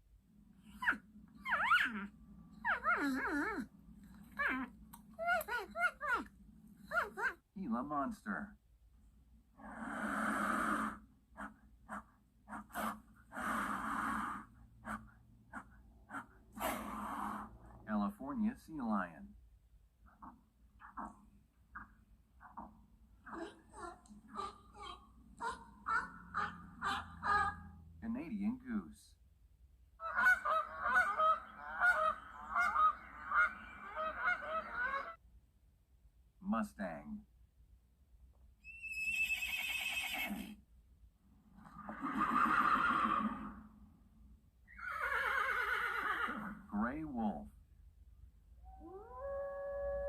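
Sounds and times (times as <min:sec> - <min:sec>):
lizard hissing: 0:09.6 - 0:11.0, 0:12.8 - 0:14.5, 0:16.6 - 0:17.6
goose honking: 0:30.0 - 0:35.2.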